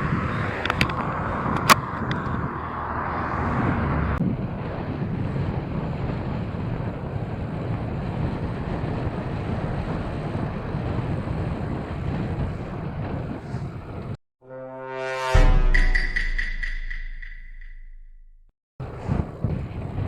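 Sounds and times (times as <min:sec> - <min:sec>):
wind rumble on microphone: 0:00.0 - 0:14.2, 0:18.8 - 0:20.0
music: 0:14.4 - 0:17.9.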